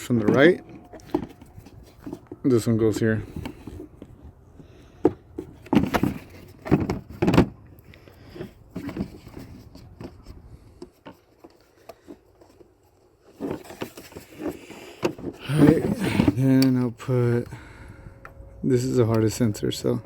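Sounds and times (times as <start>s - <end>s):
plastic parts knocking and clicking: 5.0s - 7.6s, 13.3s - 16.7s.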